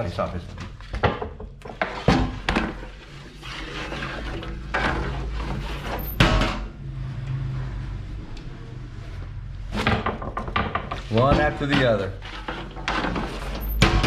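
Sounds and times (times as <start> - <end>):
wood scraping: 0.3 - 6.6, 9.6 - 14.0
sharp wooden knocks: 9.8 - 12.0.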